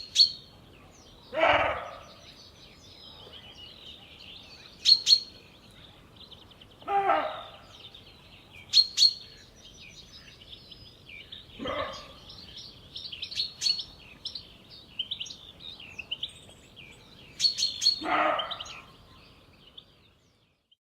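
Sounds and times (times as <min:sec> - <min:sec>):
birds twittering: 0:00.0 - 0:20.8
deer barking: 0:01.3 - 0:02.2, 0:06.8 - 0:07.7, 0:11.6 - 0:12.2, 0:18.0 - 0:18.8
sharp bird chirps: 0:03.2 - 0:05.8, 0:06.6 - 0:16.5, 0:17.1 - 0:19.2.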